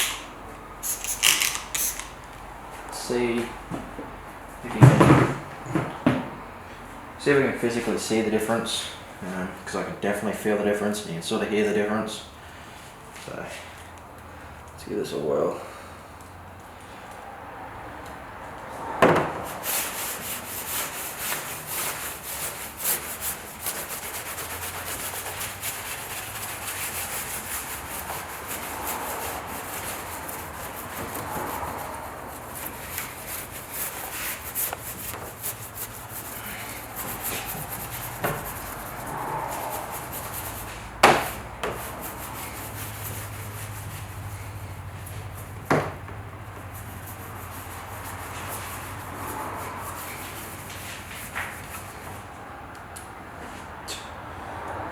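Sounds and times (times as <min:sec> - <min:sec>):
clay bar scrubbing car paint: 0:18.8 - 0:52.3.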